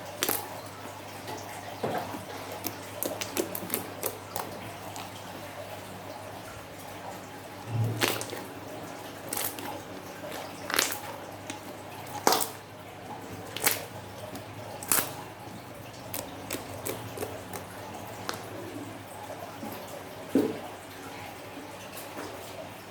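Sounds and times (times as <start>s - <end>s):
slime squishing: 0.0s - 0.6s, 2.0s - 5.5s, 7.6s - 19.0s
slime popping and clicking: 2.6s - 5.1s, 12.2s - 12.6s, 13.5s - 15.2s, 16.1s - 18.5s.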